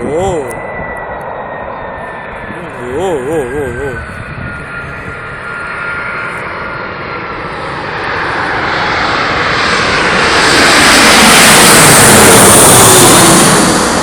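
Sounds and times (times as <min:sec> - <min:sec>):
airplane engine roar: 0:00.0 - 0:14.0
airplane engine whine: 0:00.0 - 0:14.0.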